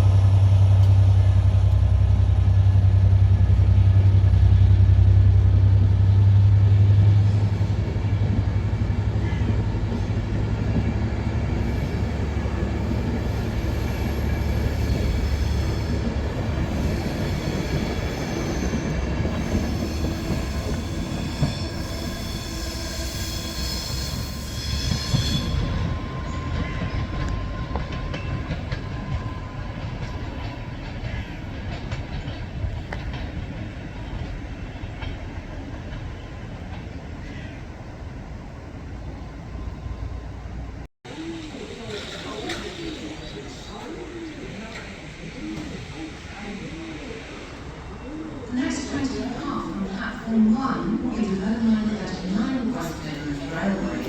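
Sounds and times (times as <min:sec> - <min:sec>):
diesel train rumbling past: 0:00.0 - 0:54.0
high-pitched wheel squeal: 0:16.7 - 0:27.7.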